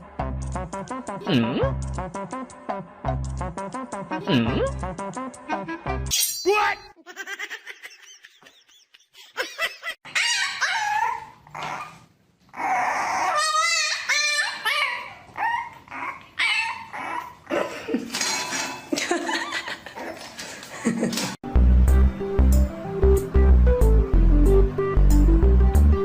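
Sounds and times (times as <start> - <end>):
dog whining and yipping: 10.1 - 17.4.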